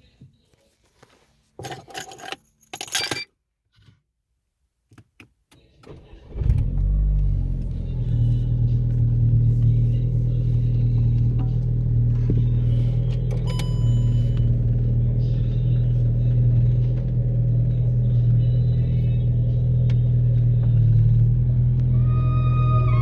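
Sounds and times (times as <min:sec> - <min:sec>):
car engine idling: 0:06.2 - 0:23.0
short high tone: 0:21.9 - 0:23.0.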